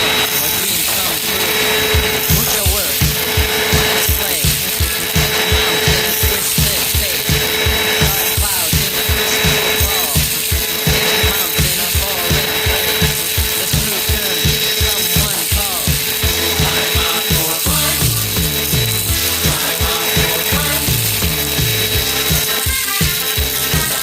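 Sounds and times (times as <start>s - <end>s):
low regular pulsing: 0.0s - 22.7s
vacuum cleaner whine: 0.0s - 24.0s.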